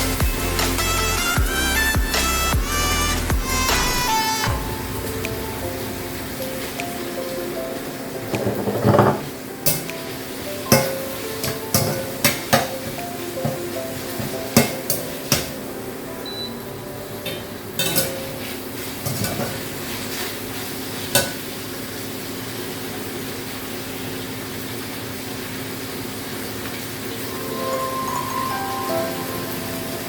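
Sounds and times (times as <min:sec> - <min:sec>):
food sizzling in a pan: 0:09.3 - 0:15.7, 0:17.3 - 0:30.0.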